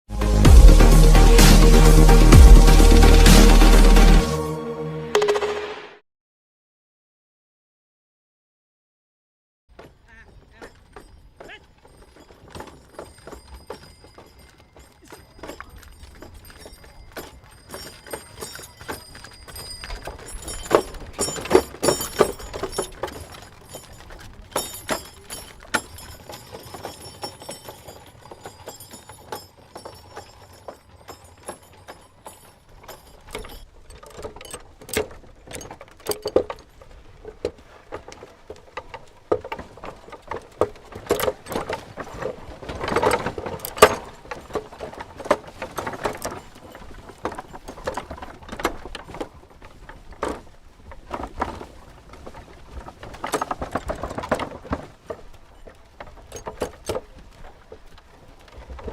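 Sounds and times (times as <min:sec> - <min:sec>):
hooves clopping: 0:00.1 - 0:04.3, 0:09.7 - 0:58.9
wooden cart knocking and rattling: 0:09.7 - 0:58.9
bells jingling: 0:10.0 - 0:34.6.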